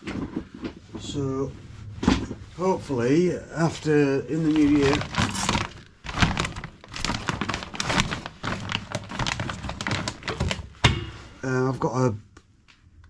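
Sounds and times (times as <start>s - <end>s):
objects knocking and clicking: 8.8s - 11.4s.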